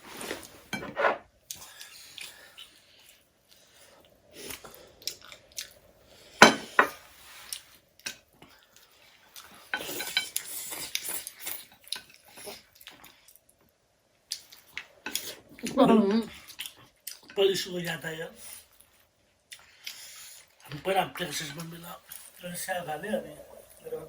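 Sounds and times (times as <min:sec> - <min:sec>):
cutlery clinking on plates: 0:06.4 - 0:07.1, 0:09.7 - 0:10.5.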